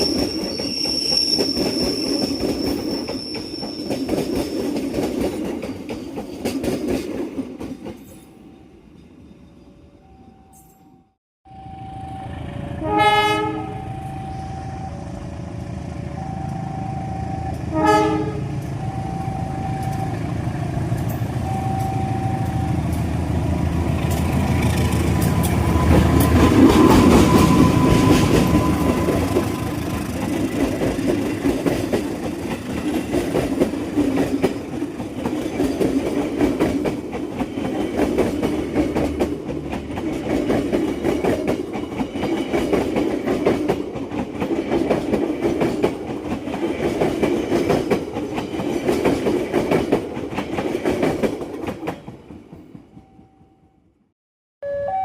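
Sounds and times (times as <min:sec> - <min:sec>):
train passing: 0:00.0 - 0:54.0
train horn blasts: 0:11.5 - 0:15.2, 0:16.0 - 0:20.2.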